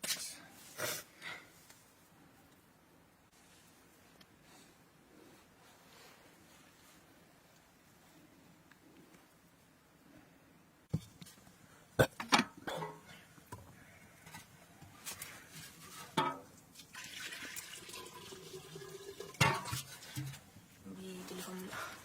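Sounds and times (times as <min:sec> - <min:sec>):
water sloshing and pouring: 0:15.5 - 0:20.6.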